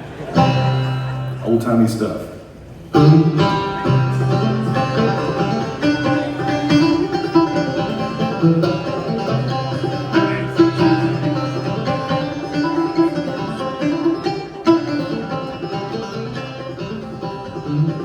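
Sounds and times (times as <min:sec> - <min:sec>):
banjo playing: 0:00.0 - 0:01.5, 0:02.8 - 0:18.0.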